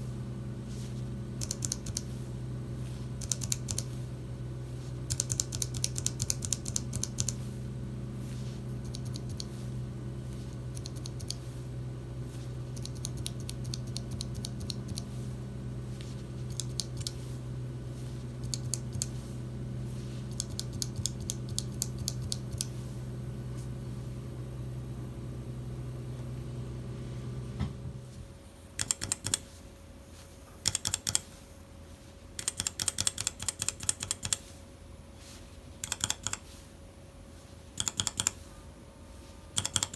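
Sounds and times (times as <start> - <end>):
low steady hum: 0.0 - 39.9
mechanical keyboard typing: 1.4 - 2.2, 3.2 - 3.9, 5.1 - 7.5, 8.8 - 9.6, 10.7 - 11.4, 12.7 - 15.2, 16.5 - 17.2, 18.4 - 19.2, 20.3 - 22.7, 28.8 - 29.4, 30.6 - 31.3, 32.4 - 34.5, 35.8 - 36.4, 37.8 - 38.4, 39.6 - 39.9.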